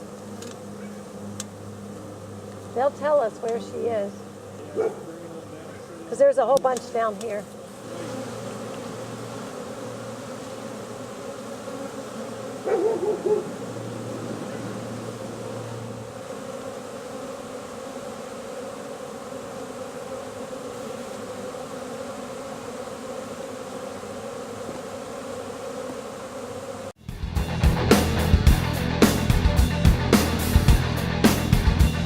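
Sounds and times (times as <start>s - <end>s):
bee swarm buzzing: 0.0s - 32.0s
rock guitar music: 27.0s - 32.0s.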